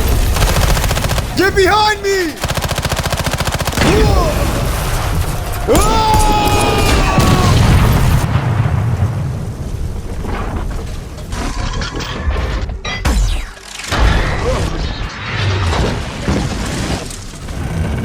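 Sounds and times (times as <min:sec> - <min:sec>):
explosion booms: 0:03.8 - 0:11.1.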